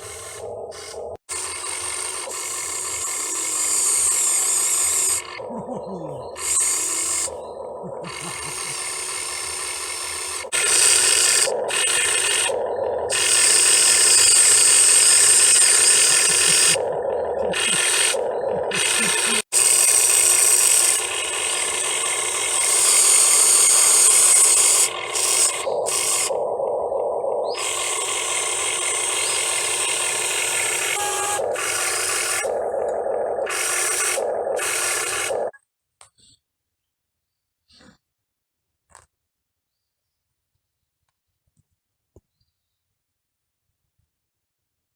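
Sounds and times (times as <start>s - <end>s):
electric motors and gearboxes whirring: 0.0s - 35.6s.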